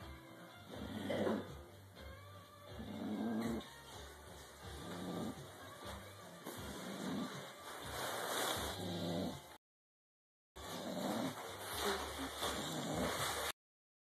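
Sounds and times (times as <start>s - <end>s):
dog snoring: 0.5s - 1.7s, 2.6s - 7.8s, 8.5s - 9.6s, 10.6s - 13.5s.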